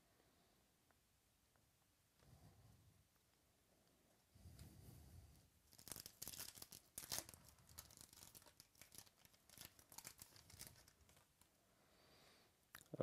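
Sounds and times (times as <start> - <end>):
wrapper tearing and crinkling: 5.7 - 11.5.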